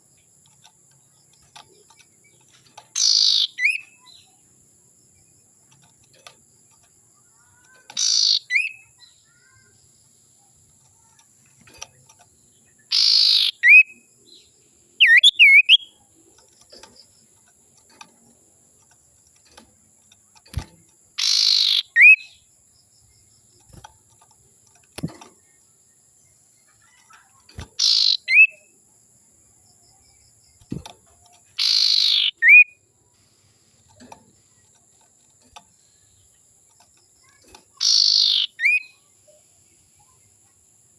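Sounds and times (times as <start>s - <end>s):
bird harsh raspy calls: 2.9s - 4.3s, 7.3s - 9.7s, 12.8s - 14.0s, 21.2s - 22.4s, 26.8s - 28.5s, 31.6s - 32.7s, 37.2s - 38.9s
bird whistled notes: 15.0s - 15.9s.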